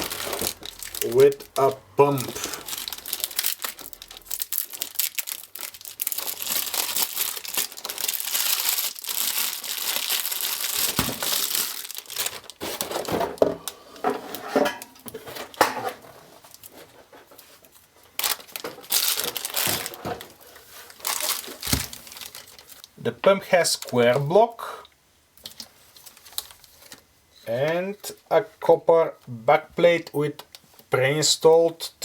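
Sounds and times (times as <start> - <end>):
packaging crinkling and rustling: 0.0 - 23.0, 23.6 - 24.3, 25.4 - 27.2.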